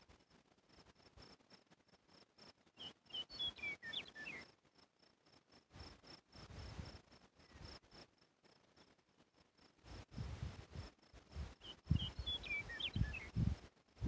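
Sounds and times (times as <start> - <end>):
cricket chirping: 0.0 - 14.0
small bird singing: 2.6 - 4.6, 11.5 - 13.6.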